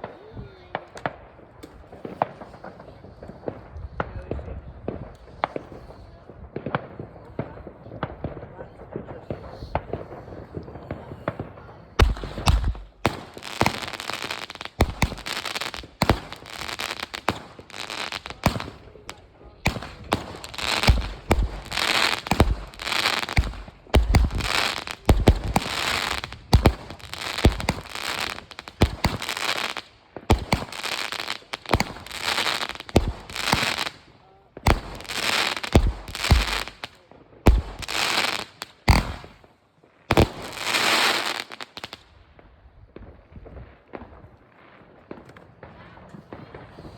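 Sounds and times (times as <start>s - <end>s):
fireworks bangs: 0.0s - 46.9s
fireworks crackle: 0.0s - 46.9s.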